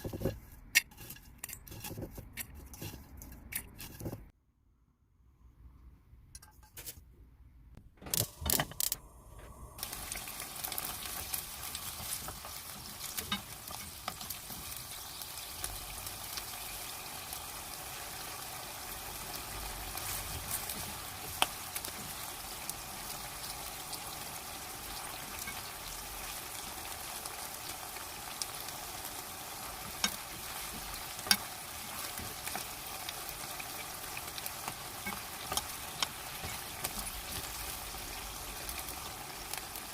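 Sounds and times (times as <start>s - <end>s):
spatula knocking and scraping pan: 0.0s - 4.3s, 11.2s - 14.9s, 29.6s - 33.0s, 33.6s - 37.8s
food sizzling in a frying pan: 9.8s - 39.9s.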